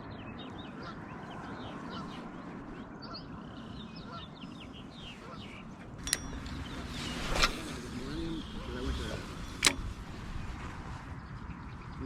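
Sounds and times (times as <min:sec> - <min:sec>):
birds chirping: 0:00.0 - 0:12.0
sharp click: 0:06.0 - 0:07.6, 0:09.6 - 0:10.0.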